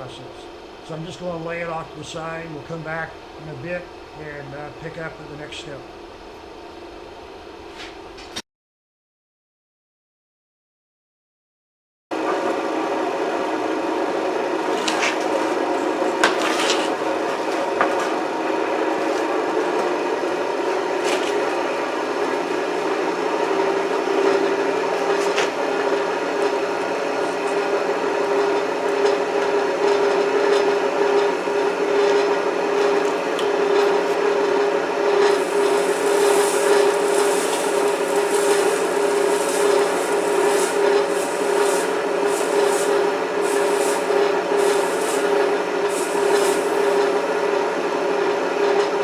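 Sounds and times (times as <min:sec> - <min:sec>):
forge fire roaring with blower: 0:12.2 - 0:49.0
fire crackling: 0:35.3 - 0:47.3.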